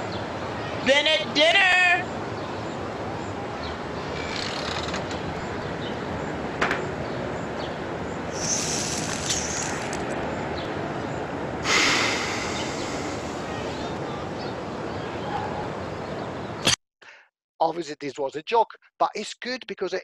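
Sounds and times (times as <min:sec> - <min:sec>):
steady background hiss: 0:00.0 - 0:16.6.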